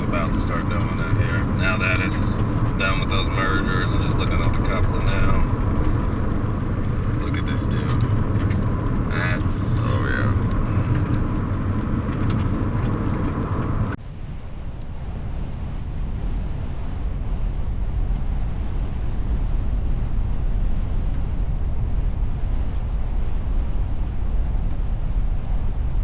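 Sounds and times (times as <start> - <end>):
car interior road rumble: 0.0 - 14.0.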